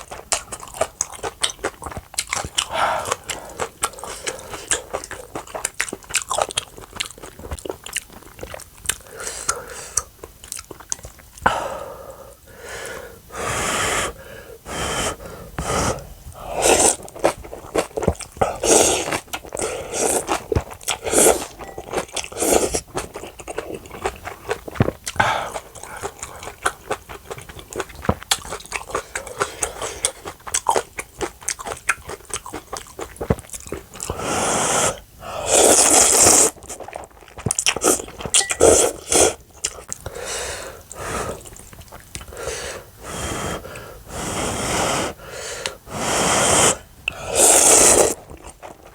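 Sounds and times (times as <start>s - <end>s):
chewing and crunching food: 0.0s - 11.5s, 16.3s - 42.9s, 46.7s - 48.9s.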